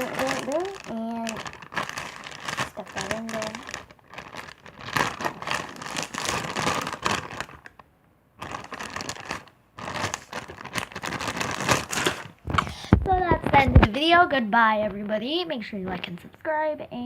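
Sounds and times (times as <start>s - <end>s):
plastic bag crinkling: 0.0s - 7.8s, 8.4s - 13.9s.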